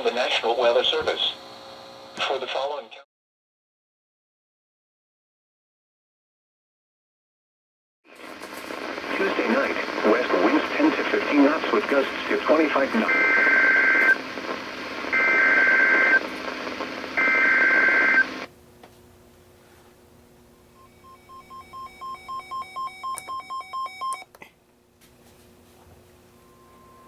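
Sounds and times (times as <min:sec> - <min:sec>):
faint hum: 0:08.1 - 0:27.0
alarm beeping rapidly: 0:20.8 - 0:24.2.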